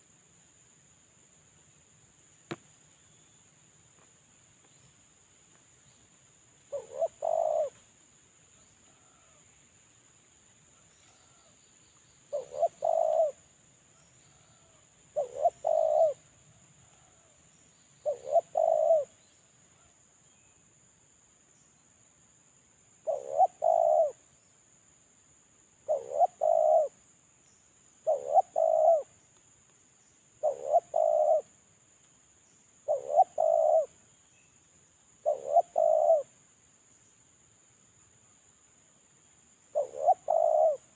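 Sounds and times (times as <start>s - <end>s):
dove cooing: 6.7s - 7.8s, 12.3s - 13.4s, 14.4s - 16.2s, 18.0s - 19.2s, 23.0s - 24.2s, 25.9s - 27.0s, 28.0s - 29.1s, 30.4s - 31.5s, 32.8s - 34.0s, 35.2s - 36.3s, 39.7s - 40.9s.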